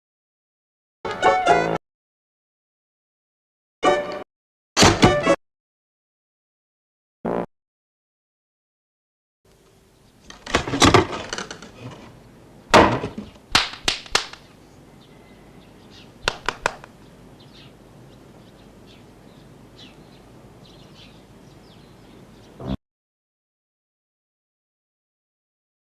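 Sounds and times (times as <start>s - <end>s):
loud door bang: 4.8s - 5.2s
door banging and rattling: 10.3s - 12.0s, 12.7s - 13.3s
faint high bird chirps: 14.6s - 16.2s
sharp clicks: 16.3s - 17.0s.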